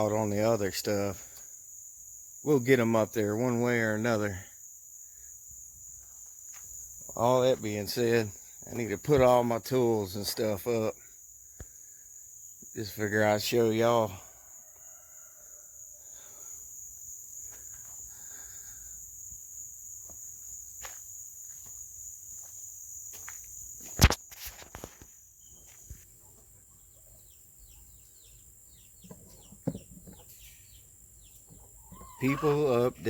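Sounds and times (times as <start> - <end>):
falling bird chirps: 24.0 - 33.0
insect trilling: 27.2 - 33.0.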